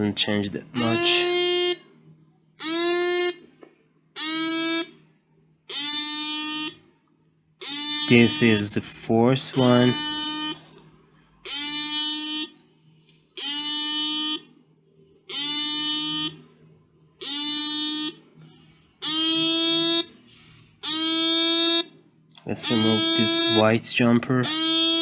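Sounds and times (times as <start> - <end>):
buzzy rising alarm beeps: 0.8 - 1.9, 7.6 - 10.7, 11.5 - 12.6, 13.4 - 14.6, 15.3 - 16.5, 17.2 - 18.2, 19.0 - 20.2, 20.8 - 22.0, 22.6 - 23.8, 24.4 - 25.0.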